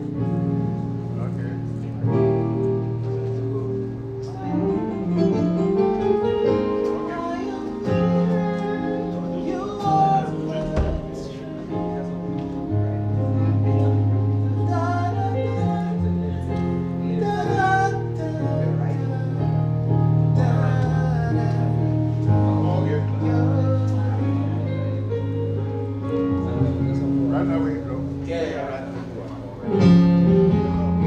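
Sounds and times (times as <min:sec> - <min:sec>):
long held bass notes: 0:00.0 - 0:31.0
plucked guitar: 0:00.0 - 0:31.0
person singing: 0:06.0 - 0:25.4.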